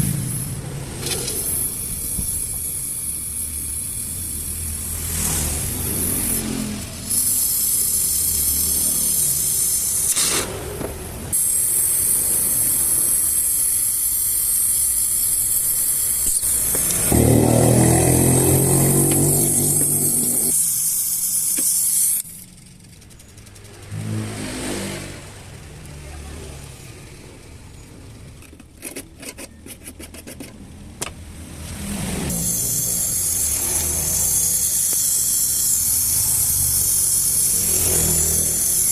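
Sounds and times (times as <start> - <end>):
pressurised gas hissing: 0.0 - 22.4, 32.3 - 38.9
low motor drone: 16.4 - 20.7.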